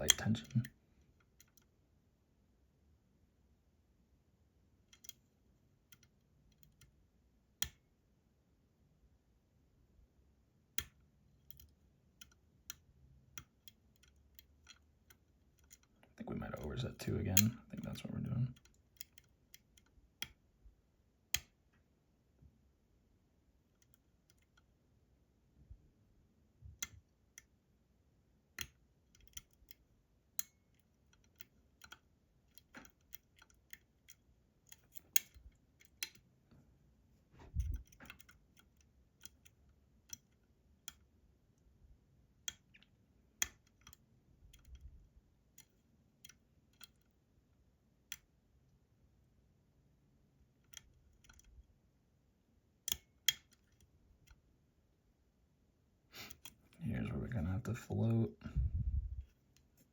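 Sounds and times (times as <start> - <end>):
lock pick clicking on pins: 0.0 - 1.7, 4.8 - 5.3, 5.9 - 7.0, 10.8 - 16.1, 17.4 - 20.4, 21.3 - 21.6, 23.7 - 24.7, 28.5 - 36.3, 37.5 - 41.1, 42.4 - 47.2, 50.5 - 51.7, 52.8 - 54.4.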